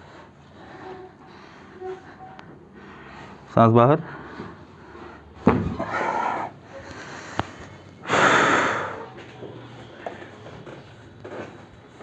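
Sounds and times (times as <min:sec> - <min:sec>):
person exhaling hard: 0:08.0 - 0:09.2.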